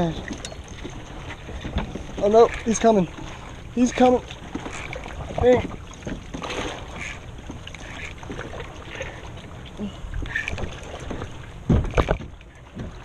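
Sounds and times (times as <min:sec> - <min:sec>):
water moving around kayak: 0:00.0 - 0:13.0
sharp knocks: 0:10.5 - 0:13.0.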